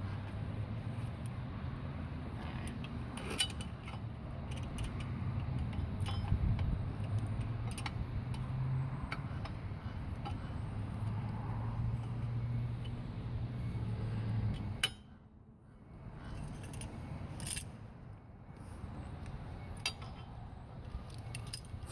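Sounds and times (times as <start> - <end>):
metallic clicks and taps of tools: 2.0 - 8.5, 14.4 - 15.1.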